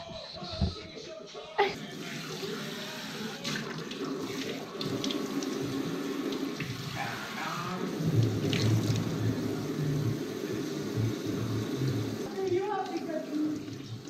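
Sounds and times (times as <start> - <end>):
tap water running: 1.8 - 14.0.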